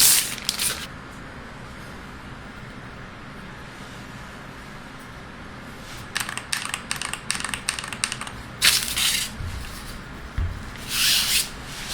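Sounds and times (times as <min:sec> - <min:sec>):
keyboard typing clicks: 0:06.1 - 0:08.4
short low thump: 0:09.4 - 0:10.9.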